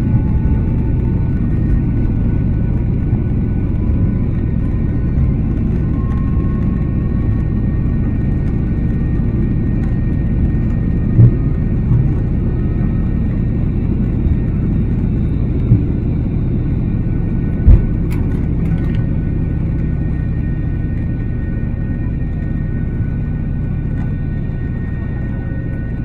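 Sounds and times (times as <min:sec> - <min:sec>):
airliner cabin rumble: 0:00.0 - 0:26.0
short thumps: 0:17.6 - 0:18.1.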